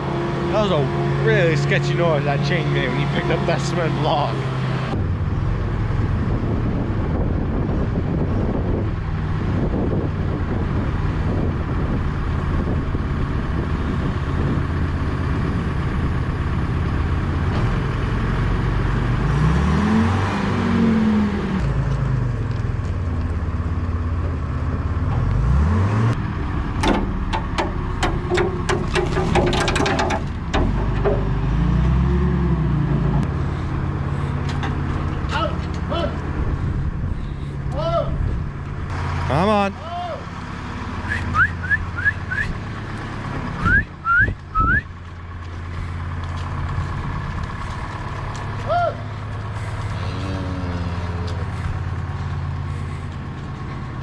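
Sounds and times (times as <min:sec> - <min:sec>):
loader engine revving: 0:00.0 - 0:54.0
sharp metallic clanks: 0:26.8 - 0:31.9.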